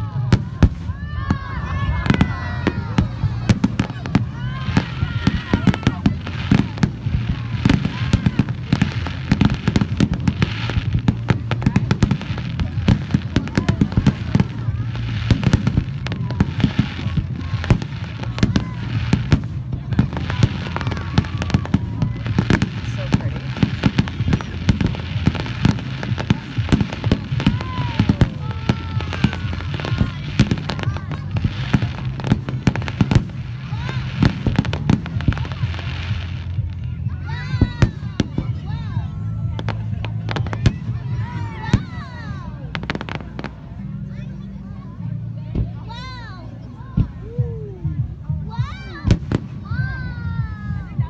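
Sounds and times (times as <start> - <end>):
fireworks bangs and pops: 0.0 - 44.2, 47.9 - 51.0
fireworks crackling: 0.0 - 51.0.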